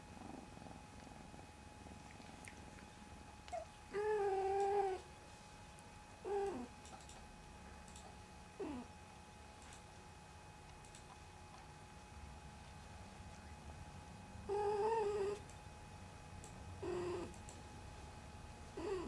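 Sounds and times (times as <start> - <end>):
cat purring: 0.0 - 2.8, 3.5 - 5.0, 6.2 - 6.8, 8.6 - 8.9, 14.4 - 15.4, 16.8 - 17.4, 18.8 - 19.0.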